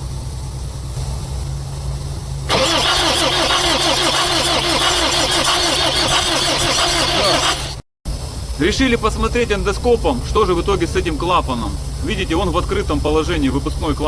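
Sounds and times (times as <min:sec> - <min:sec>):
diesel engine cranking on starter: 0:02.5 - 0:07.8.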